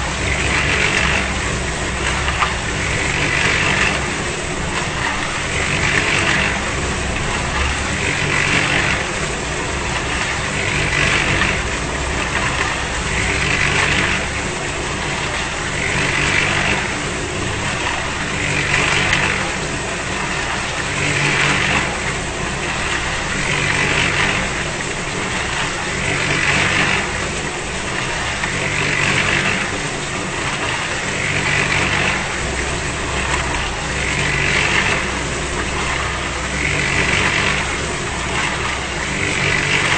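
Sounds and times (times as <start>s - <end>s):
concrete mixer drum churning: 0.0s - 39.9s
motor hum: 0.0s - 39.9s.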